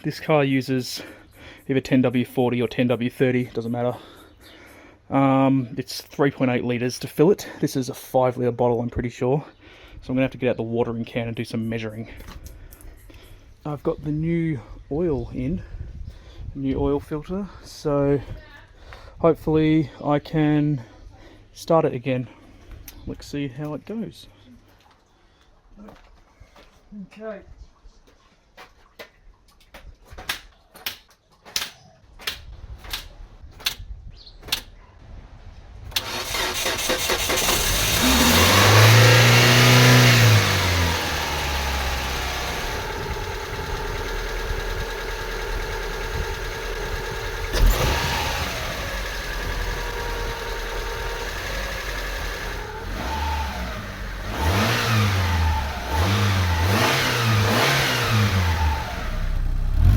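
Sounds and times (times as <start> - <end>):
car engine starting and idling: 35.9 - 59.9
engine throttle blips: 36.0 - 59.9.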